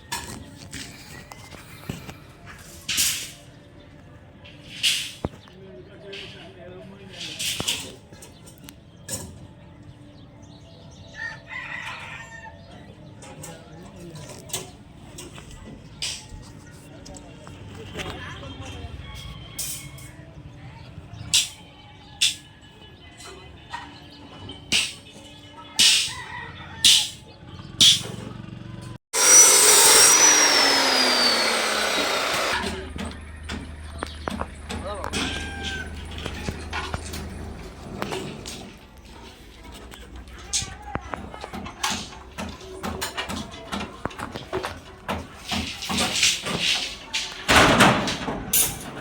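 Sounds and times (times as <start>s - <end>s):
sharp work strokes: 29.1s - 32.7s
power tool winding down: 29.2s - 32.8s
rooster crowing: 35.1s - 36.4s.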